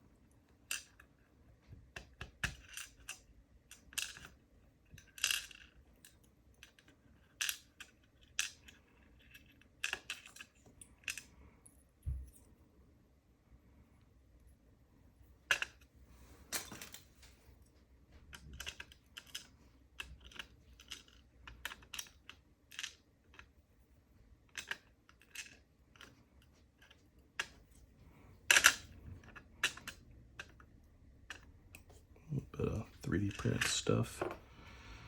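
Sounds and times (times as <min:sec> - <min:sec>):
small metal parts clicking: 0:05.0 - 0:11.8, 0:18.3 - 0:23.5, 0:24.5 - 0:26.1, 0:28.5 - 0:30.7.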